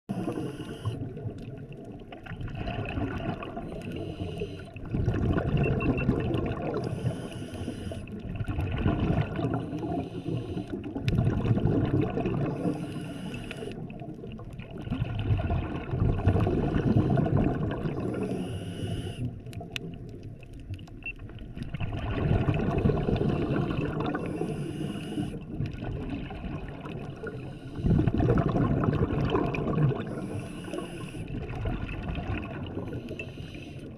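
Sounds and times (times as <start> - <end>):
diver regulator breathing: 0.1 - 1.0, 3.6 - 4.8, 6.7 - 8.2, 9.4 - 11.0, 12.4 - 13.8, 17.9 - 19.5, 23.0 - 25.5, 27.3 - 28.4, 29.9 - 31.5, 32.7 - 33.9
exhaled bubbles rushing: 0.1 - 7.2, 8.0 - 13.1, 13.7 - 18.6, 19.2 - 33.9.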